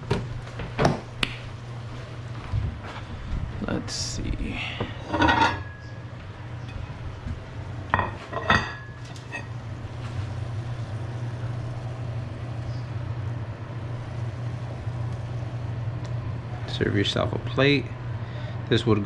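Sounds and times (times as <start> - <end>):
steady low hum: 0.0 - 19.0
utensil clinking on pan and plate: 7.9 - 9.5.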